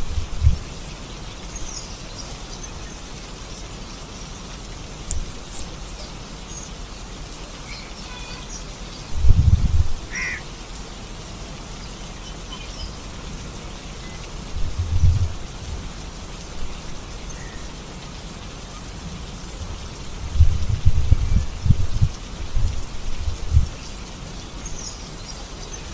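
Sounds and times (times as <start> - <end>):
rain hissing: 0.0 - 25.9.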